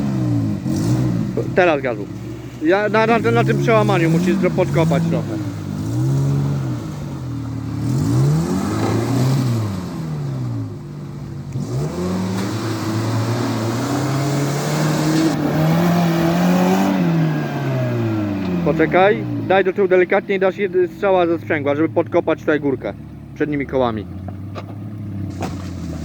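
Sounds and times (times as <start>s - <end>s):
off-road engine revving: 0.0s - 26.0s.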